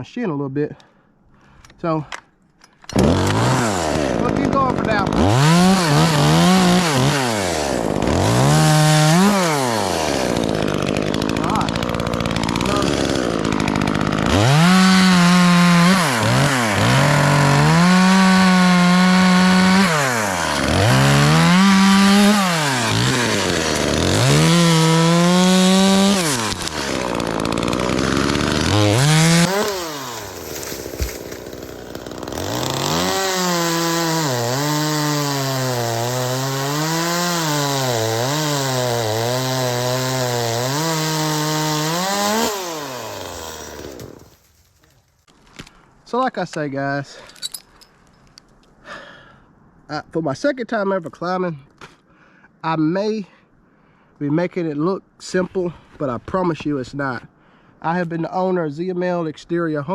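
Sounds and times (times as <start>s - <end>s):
chainsaw engine revving: 2.9s - 44.4s.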